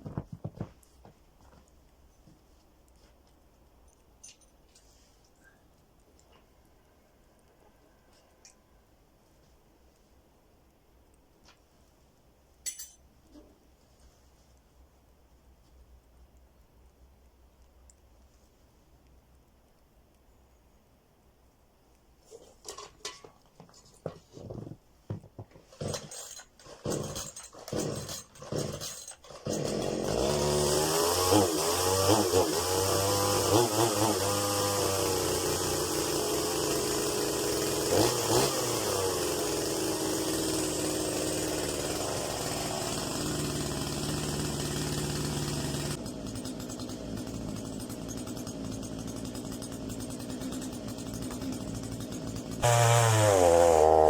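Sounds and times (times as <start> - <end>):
chainsaw pull-starting and running: 25.6 - 54.0.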